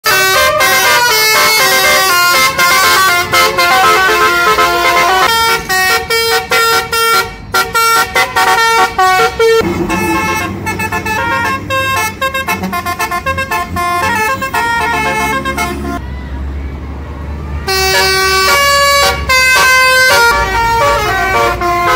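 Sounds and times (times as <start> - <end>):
bus horns playing a tune: 0.0 - 16.4, 17.6 - 21.9.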